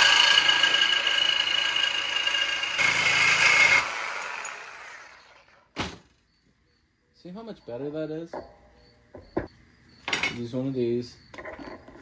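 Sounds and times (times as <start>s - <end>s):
motor winding down: 0.0s - 5.5s
power tool cutting metal: 0.0s - 5.6s.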